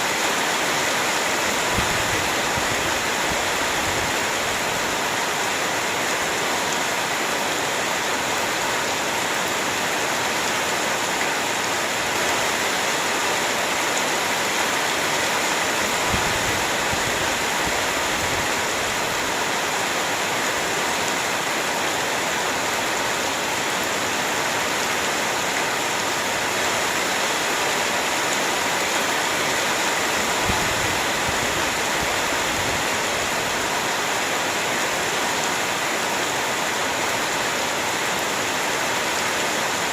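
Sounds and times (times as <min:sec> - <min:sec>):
heavy rain hiss: 0:00.0 - 0:39.9.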